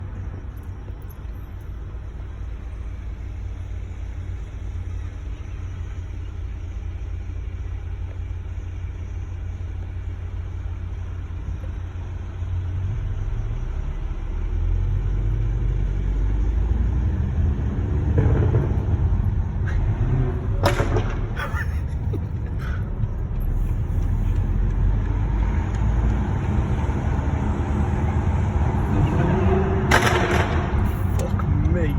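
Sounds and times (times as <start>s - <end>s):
car engine revving: 0.0s - 31.9s
exhaust crackles and pops: 0.0s - 31.9s.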